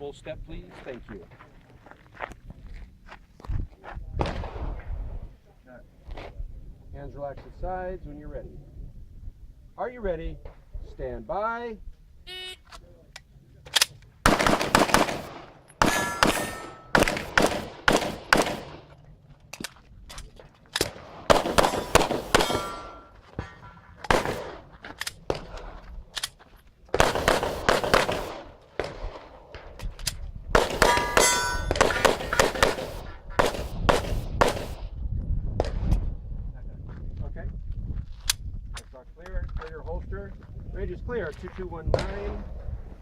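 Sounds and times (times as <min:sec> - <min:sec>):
pistol shots: 0:14.2 - 0:18.9, 0:20.8 - 0:23.1, 0:24.0 - 0:24.7, 0:26.9 - 0:29.7, 0:30.5 - 0:34.8
steel plates ringing: 0:15.8 - 0:17.0, 0:21.8 - 0:23.8, 0:30.8 - 0:32.0.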